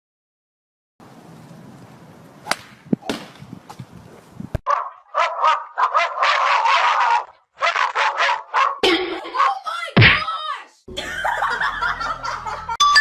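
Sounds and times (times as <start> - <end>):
dog barking: 4.7 - 8.8.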